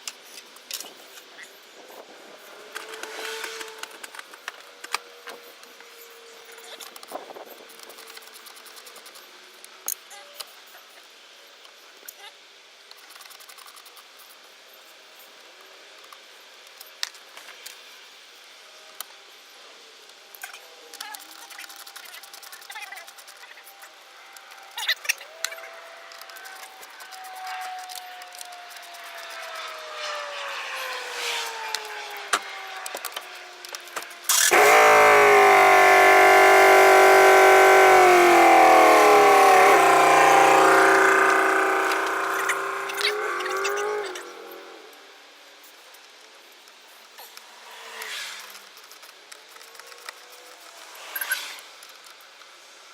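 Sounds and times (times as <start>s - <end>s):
power tool motor whining: 34.3s - 45.0s.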